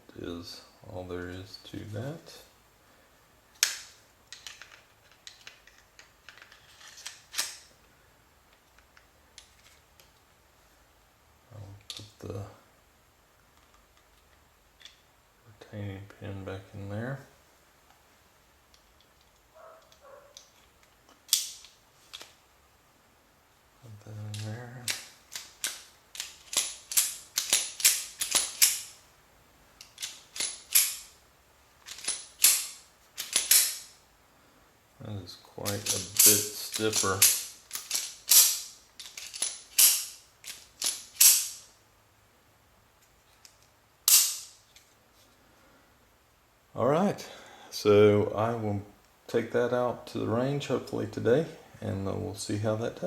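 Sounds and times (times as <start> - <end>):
metal clicks of pistol parts: 3.6 - 7.7, 18.7 - 22.4, 24.3 - 29.0, 29.8 - 31.2, 31.8 - 34.0, 35.7 - 41.7, 43.0 - 45.0
sharp metallic snap: 35.7 - 38.8, 39.4 - 41.7, 44.1 - 44.6.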